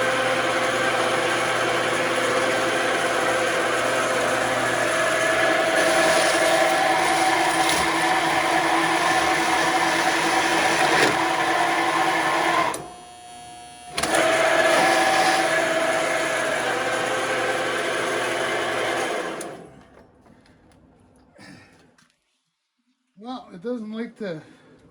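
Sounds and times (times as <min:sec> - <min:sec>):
band saw cutting metal: 0:00.0 - 0:19.7.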